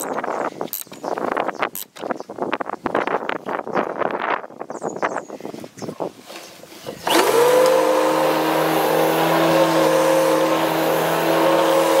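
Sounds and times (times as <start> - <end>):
motor starting up and running: 6.9 - 12.0.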